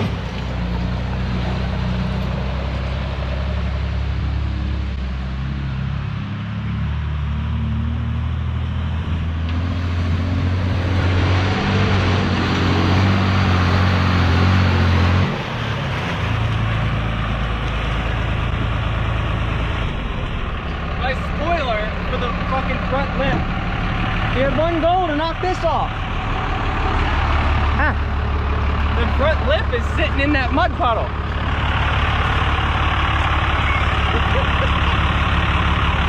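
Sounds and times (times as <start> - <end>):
diesel truck engine revving: 0.0 - 36.0.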